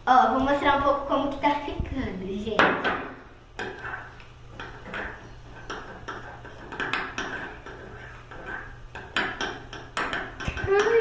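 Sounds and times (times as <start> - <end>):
utensil scraping a bowl: 3.6 - 11.0.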